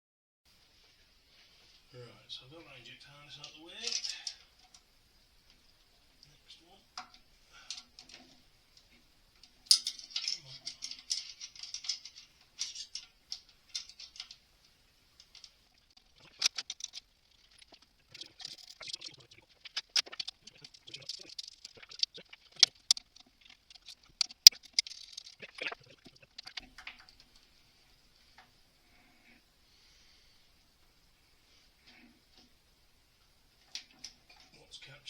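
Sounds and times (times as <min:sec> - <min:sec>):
hand tools and engine parts clinking: 0:09.4 - 0:14.4, 0:15.3 - 0:27.2.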